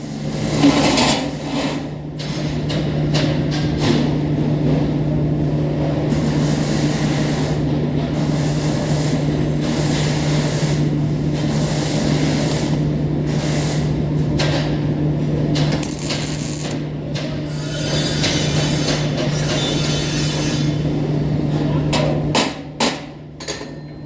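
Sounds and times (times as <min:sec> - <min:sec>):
welder hum: 0:15.7 - 0:16.8.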